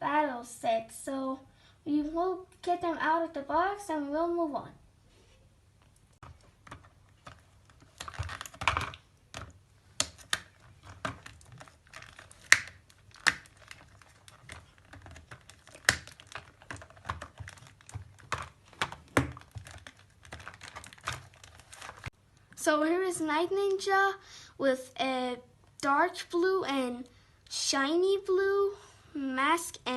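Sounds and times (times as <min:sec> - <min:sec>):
cardboard and plastic packaging rustling: 0:06.2 - 0:22.1.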